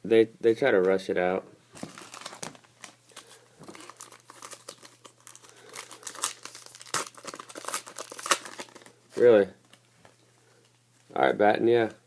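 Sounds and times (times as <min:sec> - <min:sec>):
plastic wrappers crinkling and tearing: 0:01.8 - 0:09.2.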